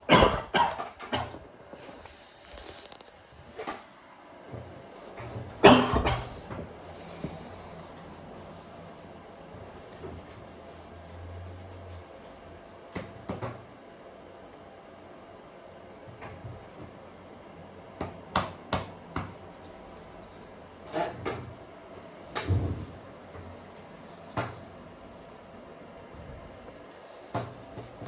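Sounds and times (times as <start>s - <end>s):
person coughing: 0.0s - 1.4s, 5.6s - 6.4s.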